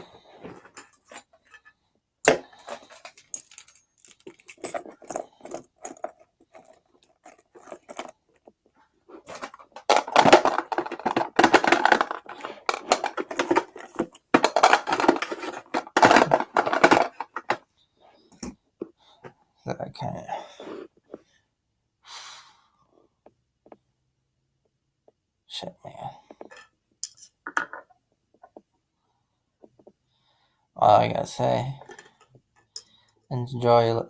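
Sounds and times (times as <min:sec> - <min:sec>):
gear rattling in metal box: 0:02.7 - 0:08.1, 0:09.3 - 0:17.6.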